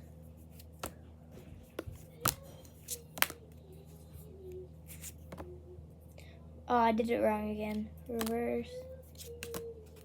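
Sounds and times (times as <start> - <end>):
trading cards being handled: 0.3 - 3.6, 4.9 - 5.5, 8.1 - 8.4, 9.0 - 10.0.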